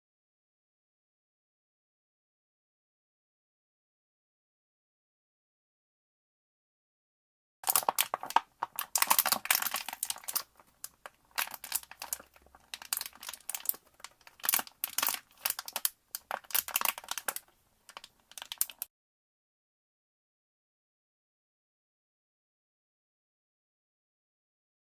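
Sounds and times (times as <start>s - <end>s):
plastic bottle being crushed: 7.6s - 18.9s.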